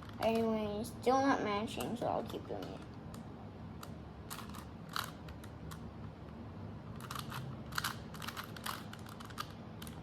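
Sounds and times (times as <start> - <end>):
puzzle cube clicking and scraping: 3.8 - 5.9, 6.9 - 10.0.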